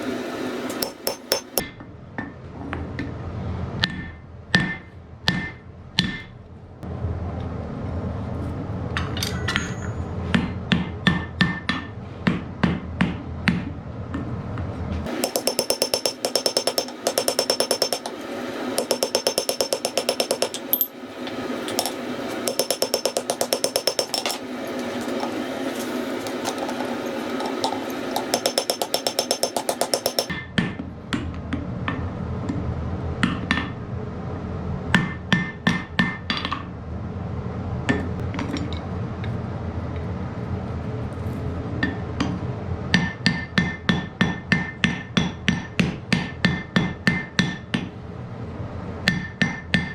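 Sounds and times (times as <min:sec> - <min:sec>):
hammer striking iron on anvil: 0:00.7 - 0:02.4, 0:03.8 - 0:06.4, 0:09.2 - 0:13.7, 0:15.1 - 0:21.0, 0:21.7 - 0:24.4, 0:26.2 - 0:30.8, 0:35.0 - 0:36.6, 0:42.9 - 0:47.9, 0:49.1 - 0:49.9.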